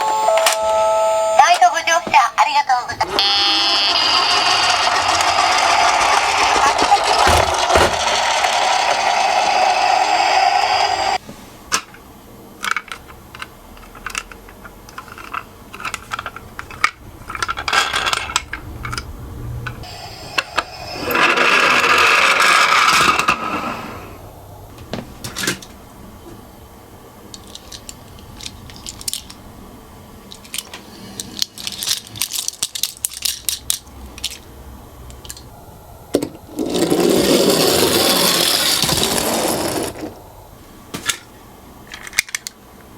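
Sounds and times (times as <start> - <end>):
toy cars clattering on track: 3.9 - 11.2, 12.6 - 19.0, 21.0 - 23.6, 30.3 - 34.4, 36.5 - 40.2.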